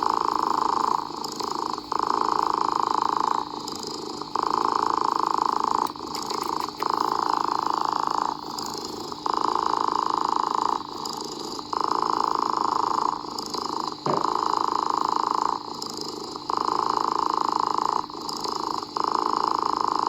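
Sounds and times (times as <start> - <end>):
cat purring: 0.0 - 20.0.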